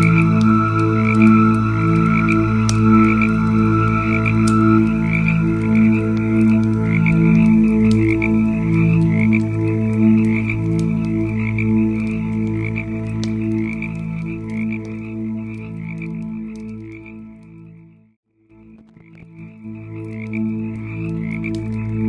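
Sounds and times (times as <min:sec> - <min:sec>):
steady low tones: 0:00.0 - 0:15.4
frog chorus: 0:00.0 - 0:17.1
campfire crackling and popping: 0:00.0 - 0:17.2.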